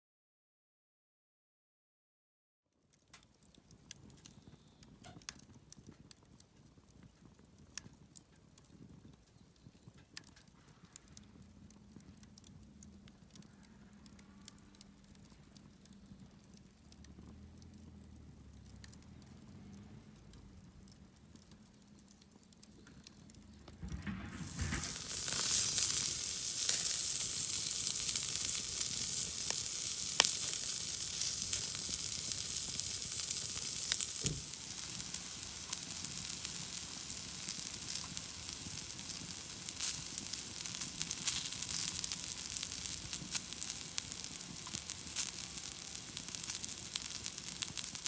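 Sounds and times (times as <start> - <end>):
food sizzling in a pan: 24.0 - 48.0.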